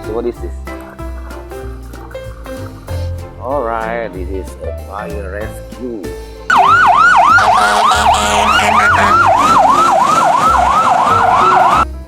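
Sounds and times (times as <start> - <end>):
electronic siren falling sweeps: 6.5 - 11.8.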